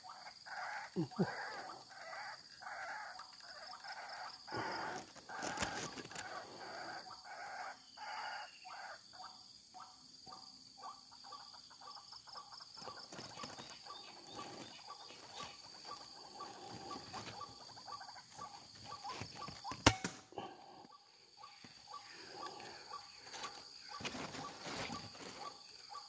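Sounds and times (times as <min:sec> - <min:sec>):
bird harsh calls: 0:12.8 - 0:26.0.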